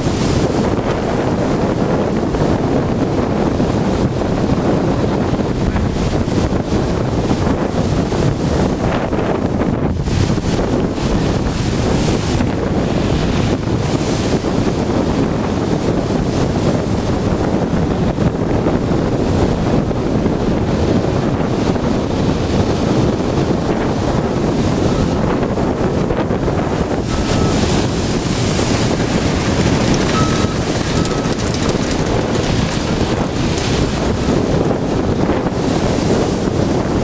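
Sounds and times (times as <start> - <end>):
waves crashing: 0.0 - 18.1, 20.7 - 37.0
wind buffeting microphone: 0.0 - 37.0.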